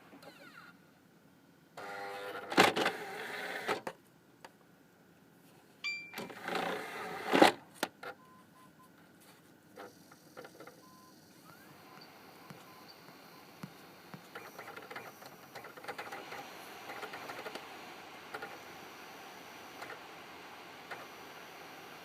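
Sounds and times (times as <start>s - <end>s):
short electronic beep: 5.8s - 6.3s
disc drive motor whirring: 6.2s - 7.5s, 9.8s - 22.0s.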